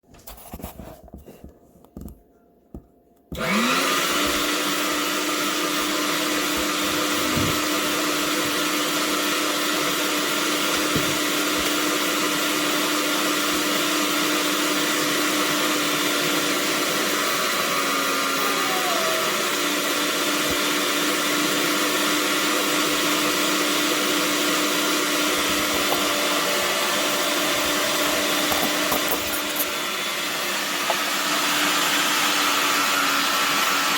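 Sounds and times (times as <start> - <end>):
meat grinder motor whine: 3.3 - 33.9.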